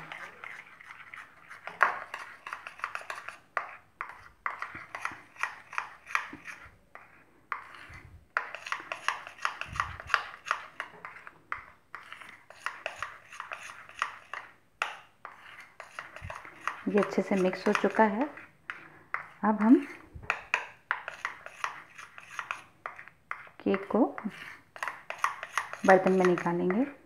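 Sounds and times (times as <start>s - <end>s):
spoon scraping against a bowl: 0.0s - 27.0s.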